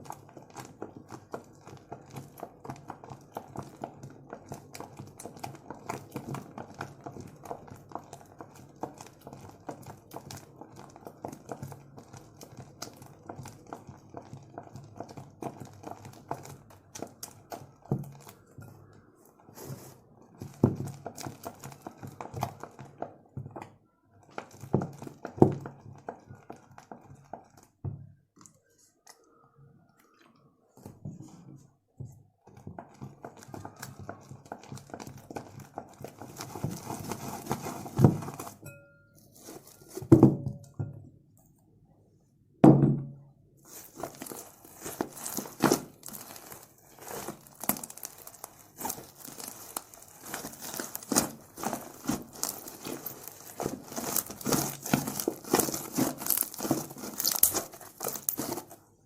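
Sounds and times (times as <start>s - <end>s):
slime squelches: 23.8s - 37.9s, 43.6s - 59.0s
slime squished by hand: 43.6s - 58.8s.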